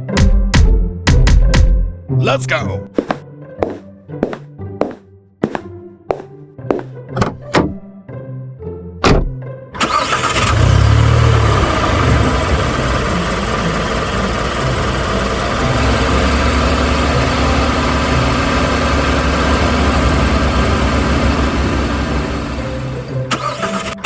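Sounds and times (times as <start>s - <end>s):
car engine starting and idling: 9.8s - 24.0s.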